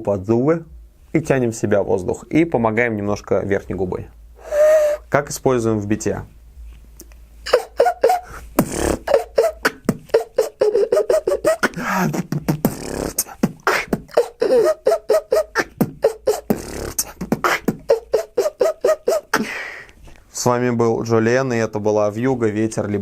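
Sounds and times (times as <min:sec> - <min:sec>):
beatboxing: 0:07.0 - 0:19.6.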